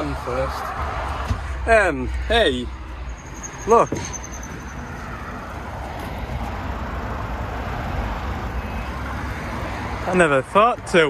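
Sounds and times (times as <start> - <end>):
van engine idling: 3.2 - 11.0.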